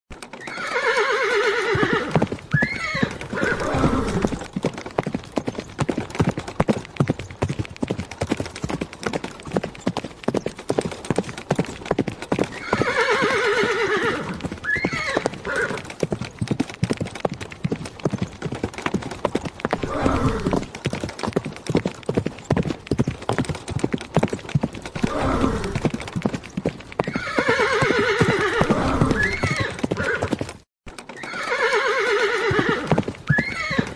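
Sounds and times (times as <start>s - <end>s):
horse hooves galloping: 0.1s - 33.9s
horse whinnying: 0.3s - 4.5s, 12.4s - 16.0s, 19.7s - 20.8s, 25.0s - 26.0s, 27.0s - 30.4s, 31.1s - 33.9s.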